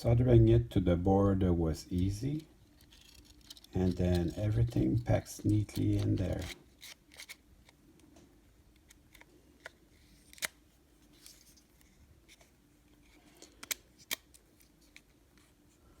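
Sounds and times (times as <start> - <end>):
small model parts clicking: 2.8 - 4.8.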